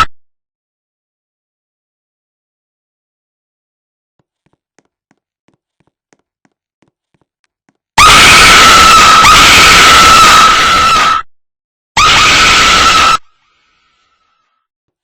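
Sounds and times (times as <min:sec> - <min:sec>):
person screeching like an alarm: 0:08.0 - 0:11.2, 0:12.0 - 0:13.3.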